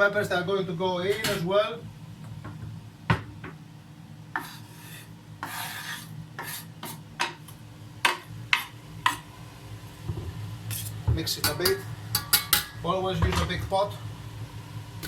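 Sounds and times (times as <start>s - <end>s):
scraping on chopping board: 4.3s - 7.0s.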